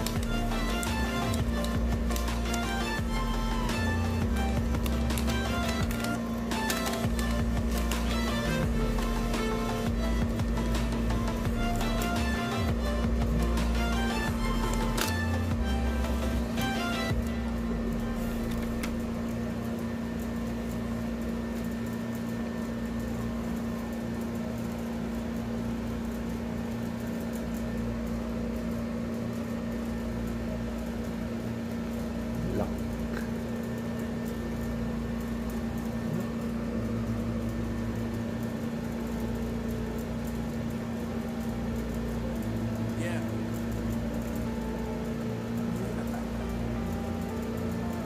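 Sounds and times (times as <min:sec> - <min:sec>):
steady machine hum: 0:00.0 - 0:48.0.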